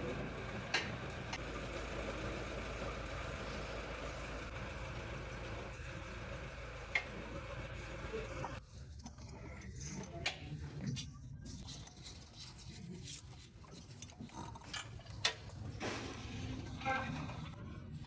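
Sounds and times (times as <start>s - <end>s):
diesel engine idling: 0.0s - 8.6s.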